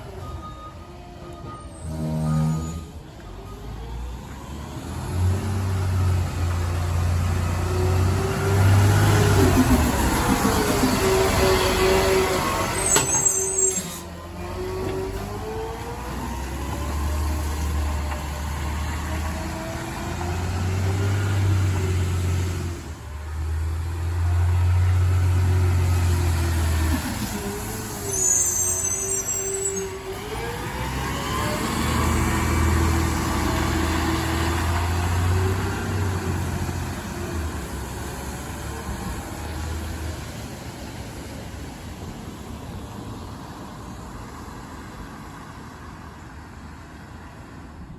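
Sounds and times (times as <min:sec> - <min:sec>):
hydraulic whine: 0:01.2 - 0:03.6
diesel engine revving: 0:01.8 - 0:28.7, 0:29.8 - 0:40.0.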